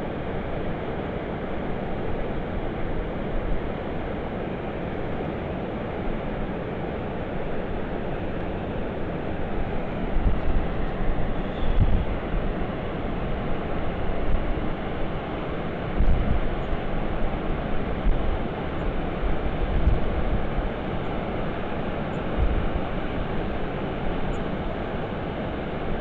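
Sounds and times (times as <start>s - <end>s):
wind buffeting microphone: 9.4s - 20.8s, 21.4s - 24.2s.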